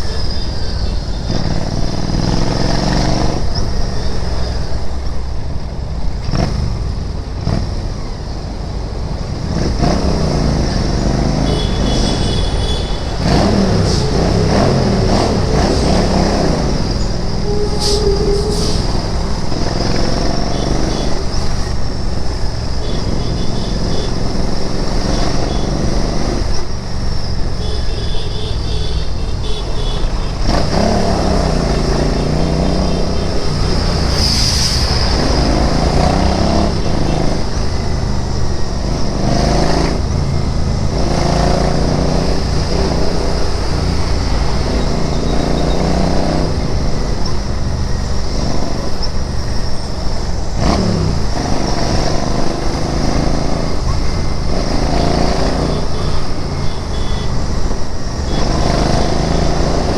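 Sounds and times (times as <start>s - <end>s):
wind and road noise: 0.0s - 59.9s
motorcycle engine revving through gears: 1.2s - 3.7s, 6.2s - 8.1s, 9.0s - 27.8s, 28.8s - 59.9s.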